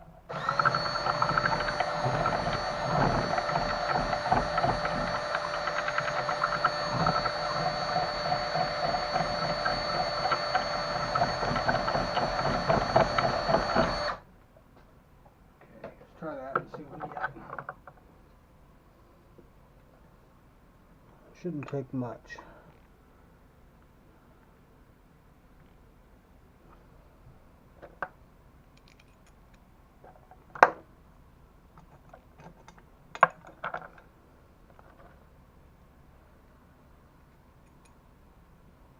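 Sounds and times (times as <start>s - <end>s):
small electric power tool running: 0.3s - 14.2s.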